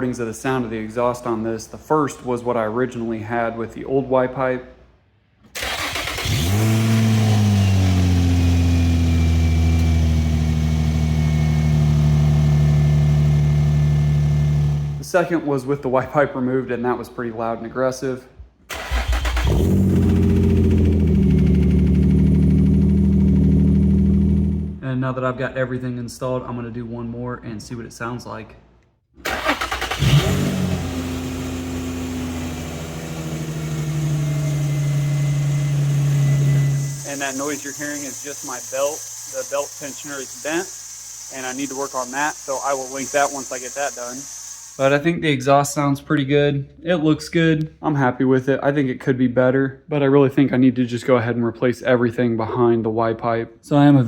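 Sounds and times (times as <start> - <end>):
car engine starting and idling: 5.6 - 15.0, 18.7 - 24.8, 29.2 - 41.2.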